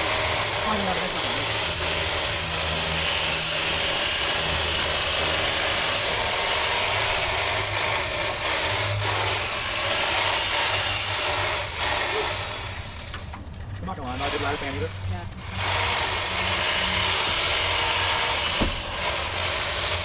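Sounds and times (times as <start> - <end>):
hedge trimmer running: 0.0 - 13.3, 13.9 - 20.0.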